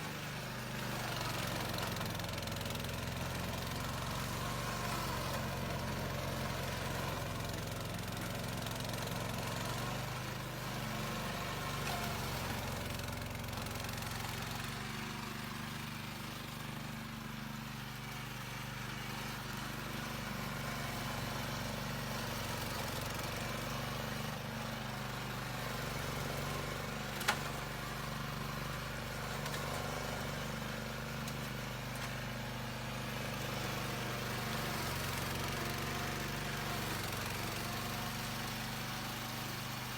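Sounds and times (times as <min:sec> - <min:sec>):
lawn mower engine running: 0:00.0 - 0:39.9.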